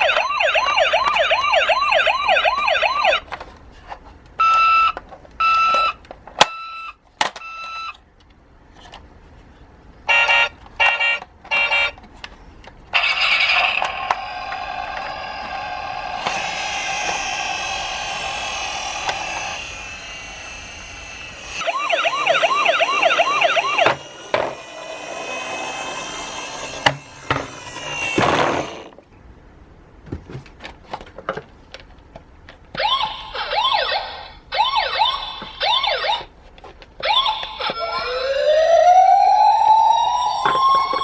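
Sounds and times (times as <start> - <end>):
toy electronic siren: 0.0 - 3.2, 4.4 - 8.0, 10.1 - 12.0, 13.0 - 28.9, 32.8 - 36.3, 37.0 - 41.0.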